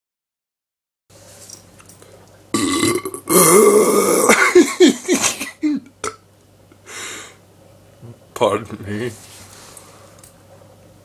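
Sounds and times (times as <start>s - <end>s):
person burping loudly: 2.5s - 5.3s, 6.0s - 6.2s.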